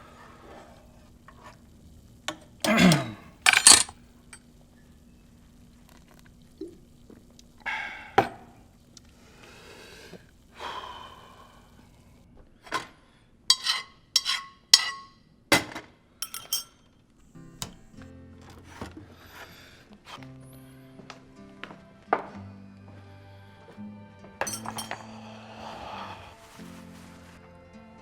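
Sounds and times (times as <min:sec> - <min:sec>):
hard objects clinking and knocking: 0:02.7 - 0:04.0, 0:13.5 - 0:15.1, 0:16.2 - 0:16.8, 0:24.4 - 0:25.0.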